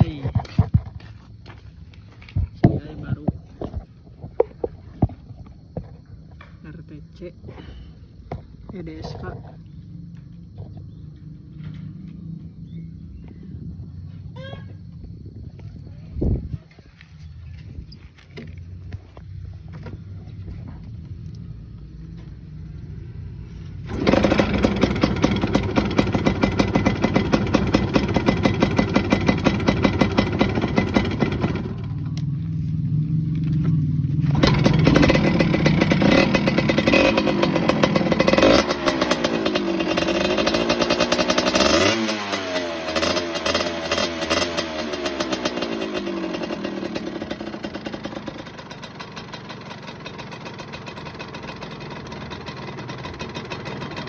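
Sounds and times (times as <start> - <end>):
motorcycle engine revving: 22.2 - 54.0.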